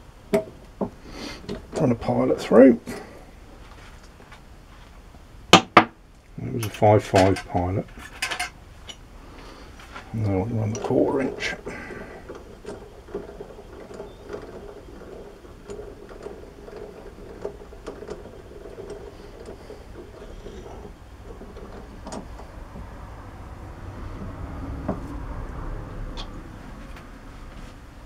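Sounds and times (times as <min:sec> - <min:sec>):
metal lathe whirring: 0:10.1 - 0:24.3.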